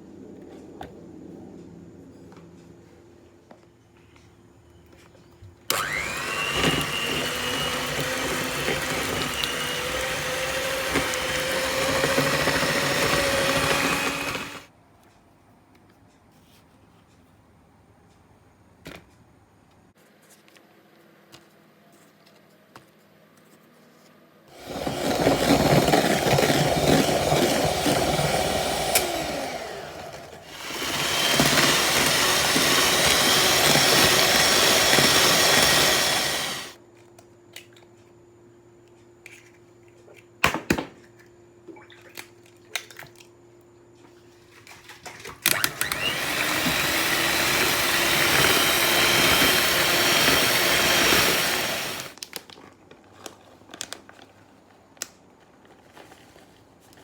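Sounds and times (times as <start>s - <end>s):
kitchen appliance motor running: 5.7s - 14.7s, 24.5s - 36.8s, 45.6s - 52.2s.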